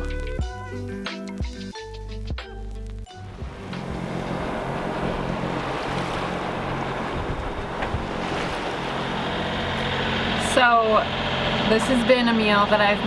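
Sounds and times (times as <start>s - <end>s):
low engine hum: 3.2s - 13.0s
water rushing past hull: 3.3s - 13.0s
wind buffeting microphone: 3.6s - 11.8s.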